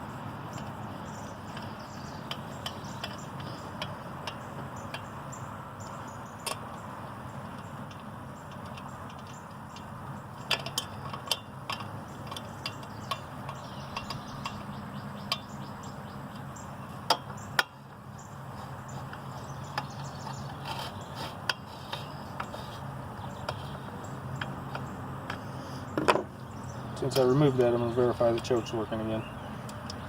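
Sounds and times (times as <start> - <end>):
steady low hum: 0.0 - 30.0
light clicks and taps of tools: 1.5 - 5.1, 6.4 - 15.5, 18.6 - 26.3, 27.0 - 28.8.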